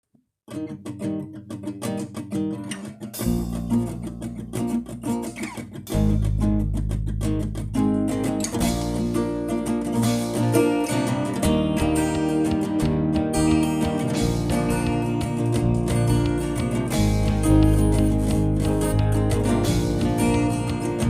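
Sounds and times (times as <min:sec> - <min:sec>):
picked guitar notes: 0:00.5 - 0:21.0
bass and band playing: 0:03.2 - 0:05.0, 0:05.9 - 0:21.0.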